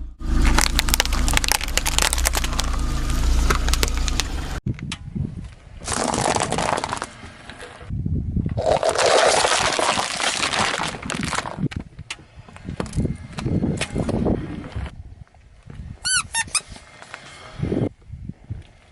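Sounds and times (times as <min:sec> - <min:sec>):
low rumble: 0:00.0 - 0:08.6
tyre crushing objects: 0:00.2 - 0:04.4
debris cracking and popping: 0:00.3 - 0:04.4, 0:08.7 - 0:11.7.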